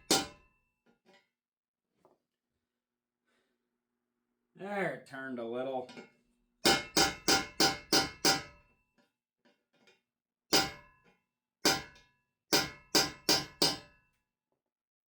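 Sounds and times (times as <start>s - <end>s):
hammer striking steel chisel: 0.0s - 0.5s, 5.9s - 8.7s, 10.5s - 14.0s.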